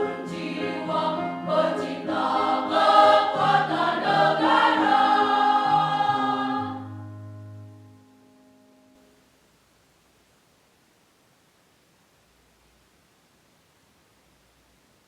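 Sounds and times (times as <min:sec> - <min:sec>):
choir singing: 0:00.0 - 0:07.2.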